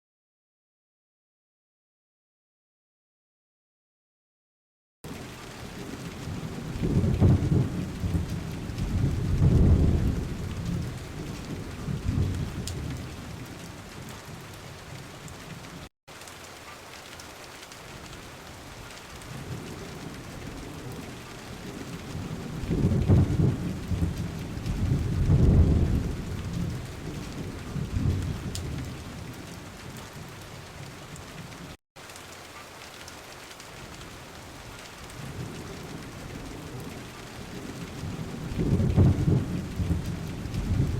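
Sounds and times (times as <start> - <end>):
low rolls of thunder: 5.1 - 15.4, 19.2 - 31.0, 35.0 - 40.9
steady rain: 5.1 - 40.9.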